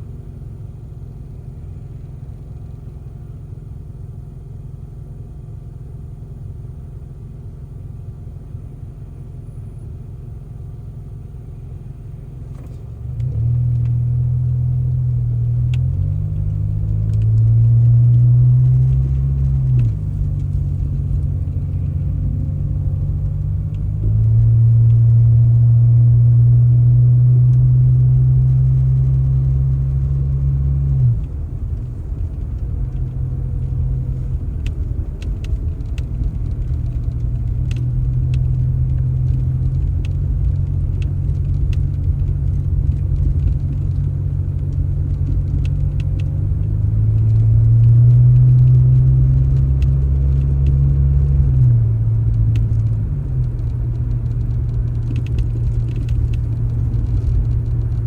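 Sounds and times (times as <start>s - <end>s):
vehicle engine droning: 0.0s - 58.0s
light clicks and rattles: 30.9s - 58.0s.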